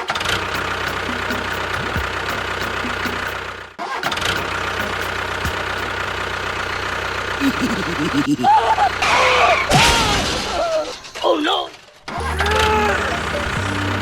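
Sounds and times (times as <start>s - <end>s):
engine running with regular ticking: 0.0s - 9.1s, 12.1s - 14.0s.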